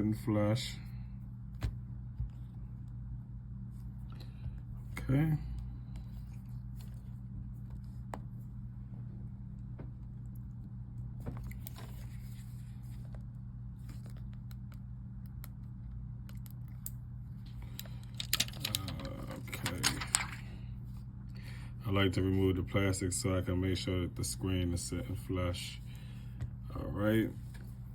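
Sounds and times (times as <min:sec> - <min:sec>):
steady low hum: 0:00.0 - 0:27.9.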